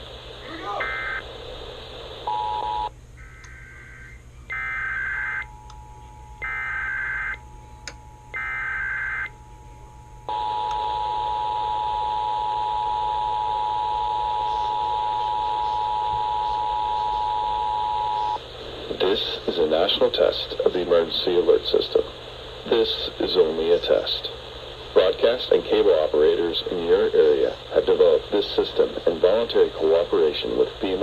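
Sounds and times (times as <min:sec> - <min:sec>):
digital data bursts: 0:00.0 - 0:05.5, 0:06.4 - 0:07.4, 0:08.4 - 0:09.3
two-tone attention signal: 0:10.3 - 0:18.4.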